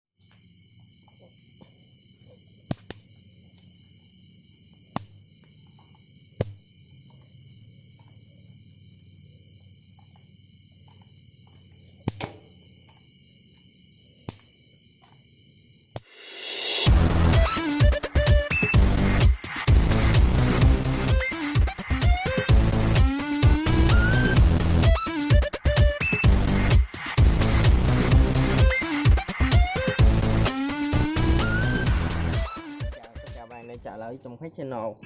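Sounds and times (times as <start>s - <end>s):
electric racket zapping insects: 2.2s - 8.8s, 9.9s - 13.2s, 15.9s - 33.8s
music: 16.0s - 34.4s
high-pitched pulsing chirr: 16.1s - 33.8s.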